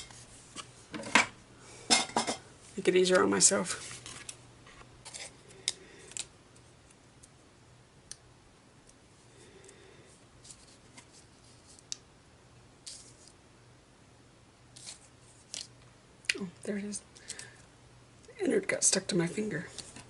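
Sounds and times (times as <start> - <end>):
quiet paper handling: 2.7 - 7.4, 10.2 - 12.0, 14.7 - 15.7, 19.2 - 20.0.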